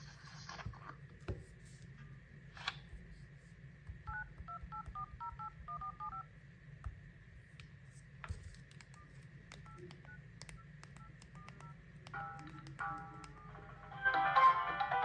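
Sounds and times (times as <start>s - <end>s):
phone keypad dialing beeps: 4.1s - 6.2s, 8.9s - 13.6s
melodic phone ringtone: 12.4s - 15.0s.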